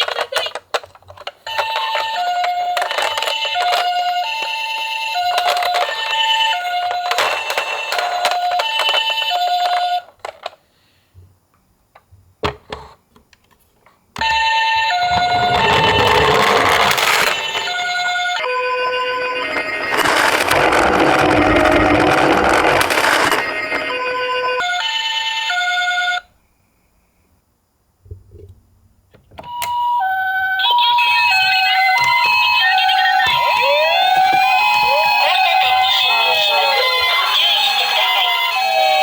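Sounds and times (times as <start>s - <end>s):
toy ambulance siren wailing: 1.5s - 10.1s, 14.2s - 26.3s, 29.5s - 39.0s
rush of noise: 15.0s - 17.4s.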